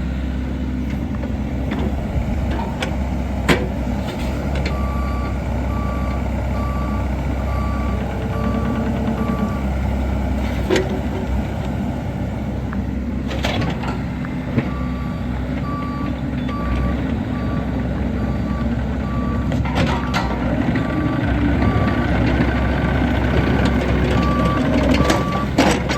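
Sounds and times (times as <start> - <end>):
diesel engine running: 0.0 - 25.9
travel alarm beeping: 24.2 - 25.6.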